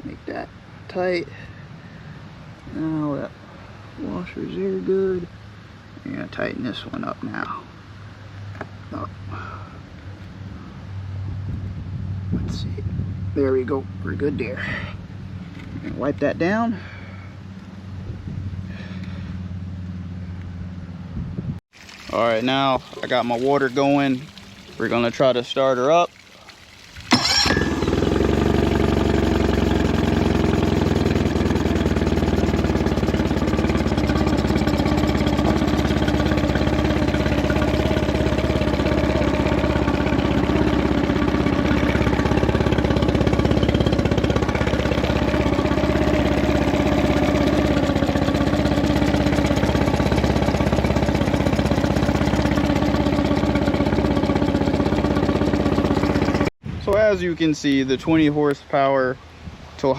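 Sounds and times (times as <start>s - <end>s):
outboard motor running: 26.4s - 56.5s.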